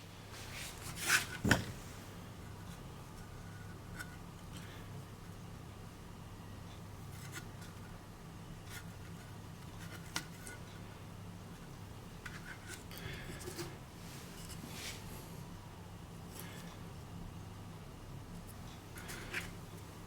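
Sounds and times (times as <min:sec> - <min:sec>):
handling rustles and scrapes: 0:00.3 - 0:04.2, 0:12.1 - 0:15.5, 0:18.4 - 0:20.0.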